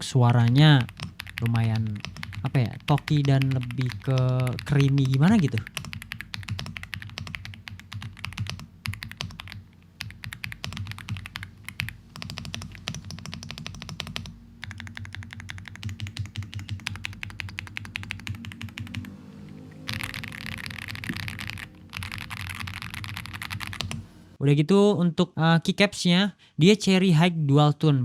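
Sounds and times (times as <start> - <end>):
fast typing on mechanical keyboard: 0.2 - 24.0.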